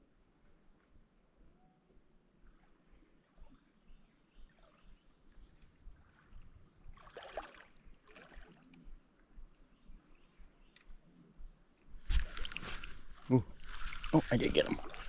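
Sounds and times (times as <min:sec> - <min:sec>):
faint kayak water splashes: 0:02.4 - 0:10.2, 0:12.0 - 0:15.0.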